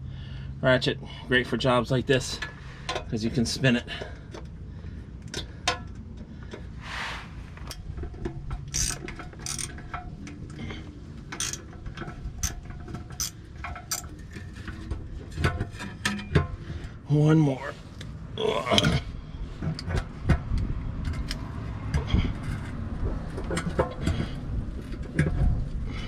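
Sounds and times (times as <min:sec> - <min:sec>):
hand ratchet clicking: 0:08.6 - 0:09.8, 0:11.3 - 0:11.7, 0:12.4 - 0:14.1.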